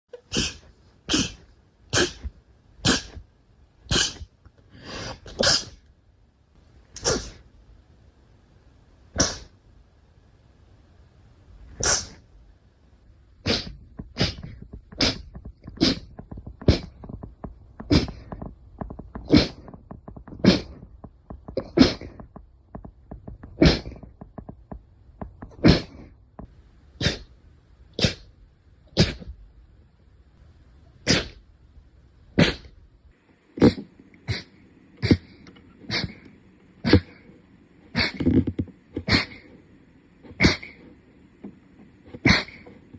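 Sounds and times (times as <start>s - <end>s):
short sharp sneezes: 0.3s - 3.2s, 3.9s - 4.3s, 4.9s - 5.8s, 7.0s - 7.4s, 9.2s - 9.5s, 11.8s - 12.2s, 13.5s - 15.2s, 27.0s - 27.3s, 28.0s - 28.3s, 28.9s - 29.3s, 31.1s - 31.4s, 32.4s - 32.7s, 42.2s - 42.7s.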